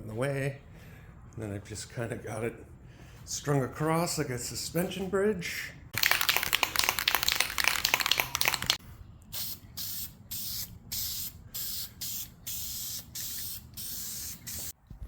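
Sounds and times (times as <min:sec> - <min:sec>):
spray can being shaken: 0:06.0 - 0:08.8, 0:09.4 - 0:14.7
spray paint hissing bursts: 0:06.3 - 0:14.8.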